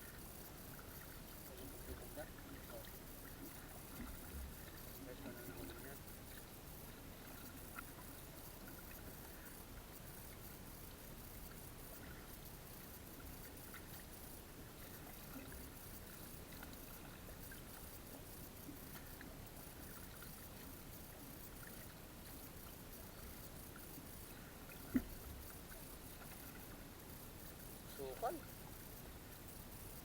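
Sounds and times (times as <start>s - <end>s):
water splashes: 18.7s - 27.1s.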